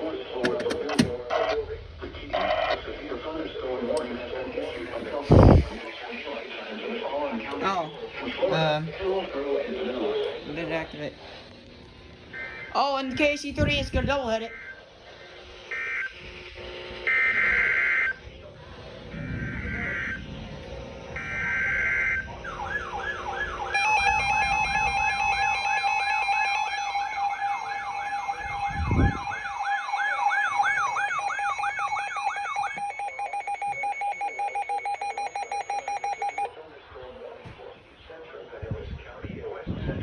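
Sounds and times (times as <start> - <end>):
warbling siren: 4.7 - 5.8, 15.6 - 36.5.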